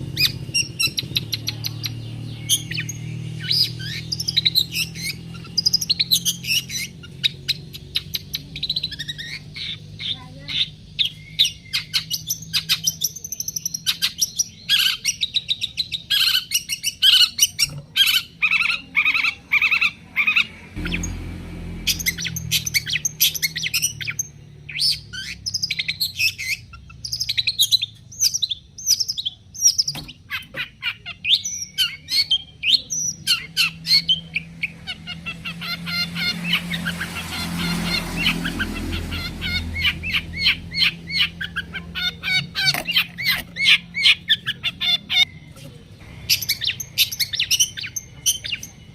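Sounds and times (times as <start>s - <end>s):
bird chattering song: 0.0s - 48.9s.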